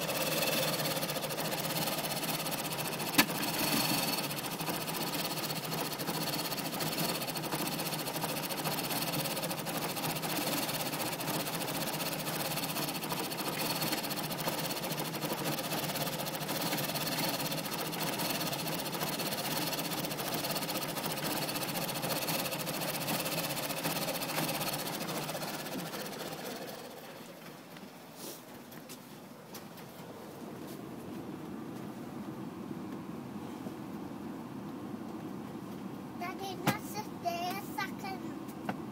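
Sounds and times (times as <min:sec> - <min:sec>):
car engine idling roughly: 0:00.0 - 0:27.0.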